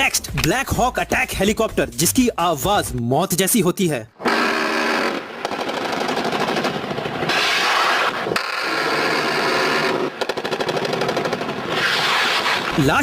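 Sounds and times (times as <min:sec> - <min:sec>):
helicopter rotor blades chopping: 0:04.2 - 0:13.0.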